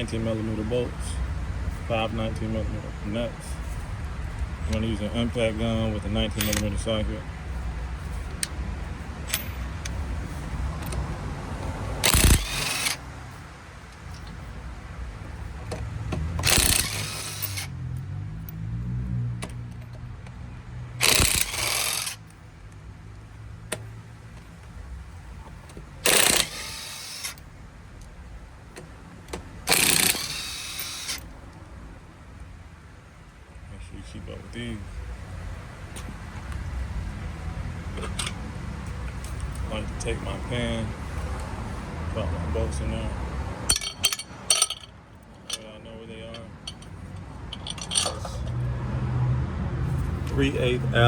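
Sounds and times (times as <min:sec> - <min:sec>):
air impact gun rattling: 0:12.0 - 0:13.1, 0:16.4 - 0:17.7, 0:21.0 - 0:22.3, 0:26.0 - 0:27.4, 0:29.3 - 0:31.3, 0:43.7 - 0:45.6.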